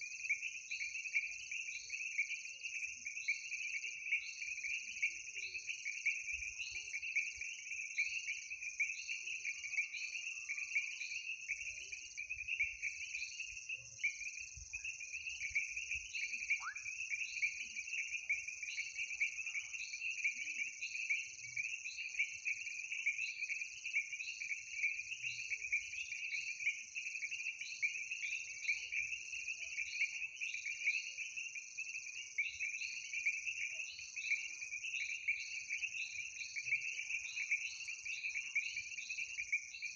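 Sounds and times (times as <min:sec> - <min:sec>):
frogs trilling: 0:08.0 - 0:39.9.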